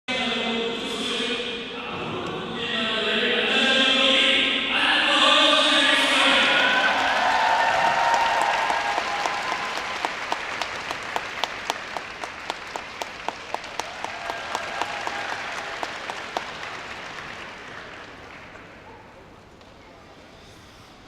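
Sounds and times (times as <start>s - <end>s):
audience applause: 6.1s - 18.9s
person clapping sharply: 7.7s - 18.2s.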